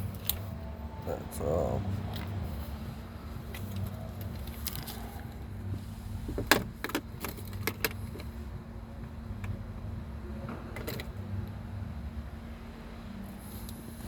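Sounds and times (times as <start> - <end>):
sharp clicks and rattles: 6.3 - 8.4.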